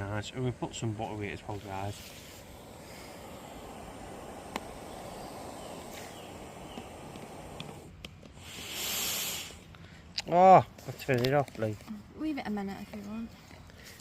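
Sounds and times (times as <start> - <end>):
camping stove hissing: 0.0 - 9.7
louder bright hiss: 0.7 - 9.7.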